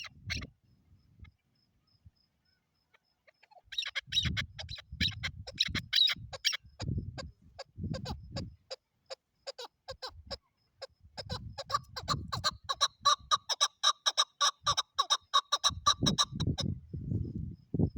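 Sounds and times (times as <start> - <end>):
partridge clucking calls: 0.0 - 0.5, 2.9 - 16.7.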